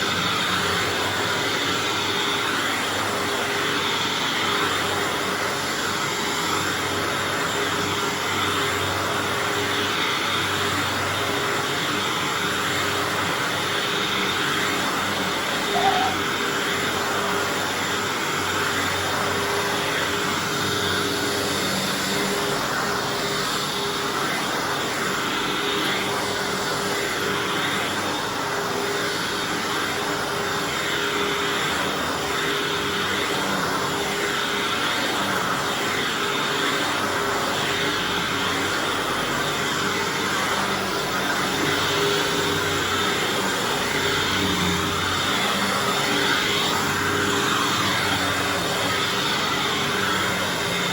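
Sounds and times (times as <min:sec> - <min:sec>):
vacuum cleaner running on carpet: 0:00.0 - 0:50.9.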